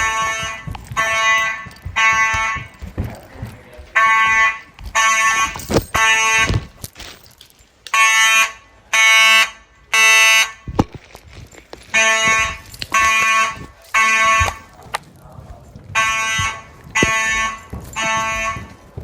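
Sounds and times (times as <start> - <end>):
fire alarm tones: 0.0 - 2.8, 3.9 - 6.7, 7.9 - 10.7, 11.9 - 14.8, 15.9 - 19.0.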